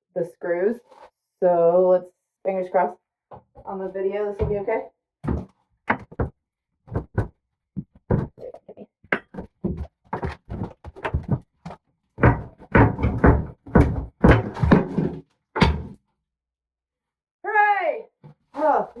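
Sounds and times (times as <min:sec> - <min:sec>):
crowbar prying board off wall: 0:05.2 - 0:06.3, 0:09.1 - 0:16.0
knocks thuds and crunches: 0:05.2 - 0:06.3, 0:09.2 - 0:11.4, 0:12.2 - 0:16.0.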